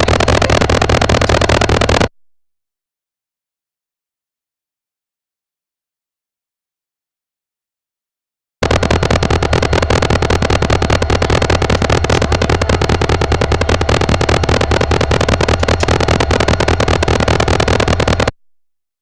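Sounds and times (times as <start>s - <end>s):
locomotive diesel engine rumbling: 8.6s - 17.0s.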